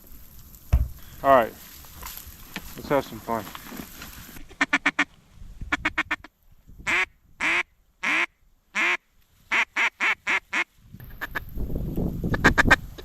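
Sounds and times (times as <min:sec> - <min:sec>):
wind noise: 0:00.0 - 0:07.6, 0:10.2 - 0:13.0
duck quacking: 0:04.4 - 0:05.1, 0:05.7 - 0:06.3, 0:06.9 - 0:11.4, 0:12.3 - 0:13.0.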